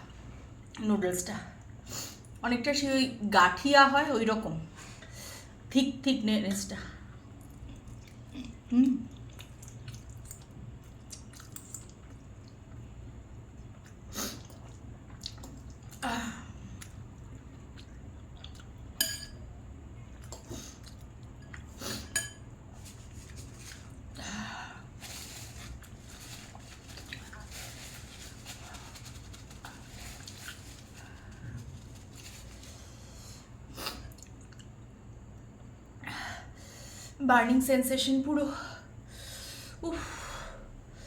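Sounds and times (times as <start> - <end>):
low steady hum: 0.0 - 41.0.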